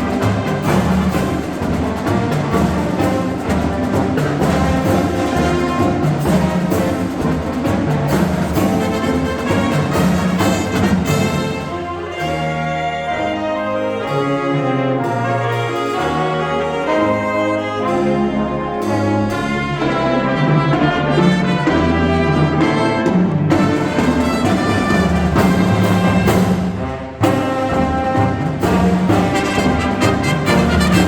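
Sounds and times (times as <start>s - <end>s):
drum hits: 0.0s - 11.8s, 23.2s - 31.0s
marching band brass playing: 0.0s - 31.0s.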